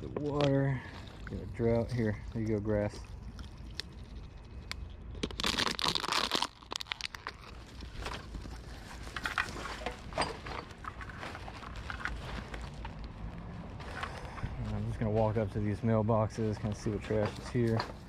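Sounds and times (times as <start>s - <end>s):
dense crackle: 0.0s - 14.8s
litter crinkling and crunching: 0.0s - 18.0s.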